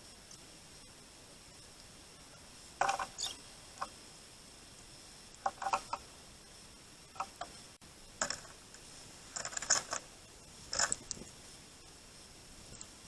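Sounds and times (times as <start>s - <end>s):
birds pecking at feeder: 2.8s - 4.0s, 5.3s - 6.1s, 8.2s - 10.1s, 10.7s - 11.3s.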